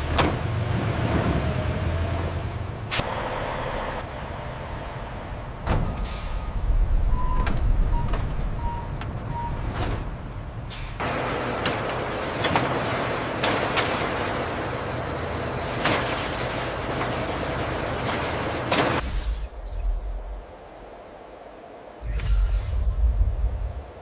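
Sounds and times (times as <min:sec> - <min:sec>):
industrial machinery running: 0:11.0 - 0:19.0.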